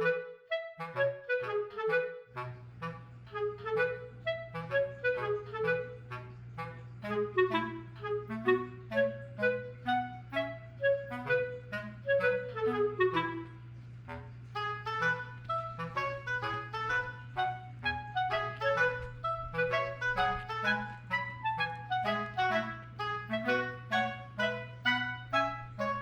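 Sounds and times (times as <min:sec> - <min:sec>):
bouncy background melody: 0:00.0 - 0:26.0.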